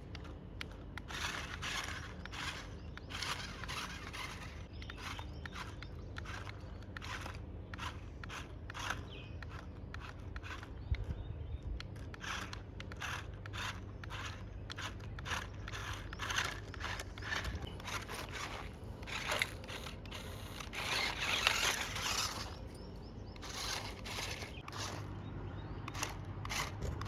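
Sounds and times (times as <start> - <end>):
motor hum: 0.0 - 27.0
scraping and crunching gravel: 14.5 - 25.1.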